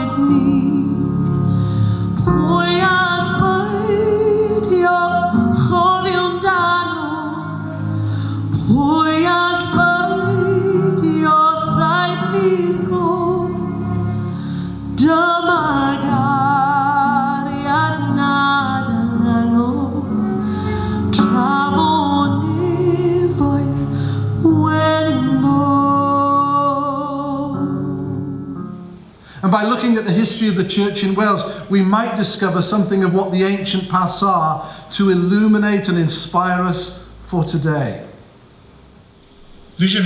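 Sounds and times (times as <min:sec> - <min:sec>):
woman singing with vibrato: 0:00.0 - 0:28.4.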